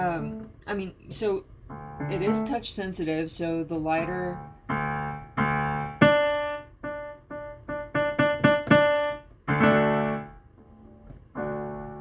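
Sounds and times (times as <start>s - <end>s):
digital piano notes and chords: 1.7s - 2.6s, 4.0s - 12.0s.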